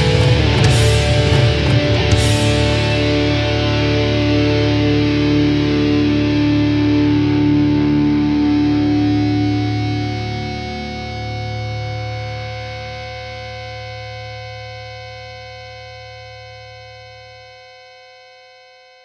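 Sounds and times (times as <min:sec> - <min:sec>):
cymbal crash: 0:00.0 - 0:05.4
distorted electric guitar notes: 0:00.0 - 0:15.1.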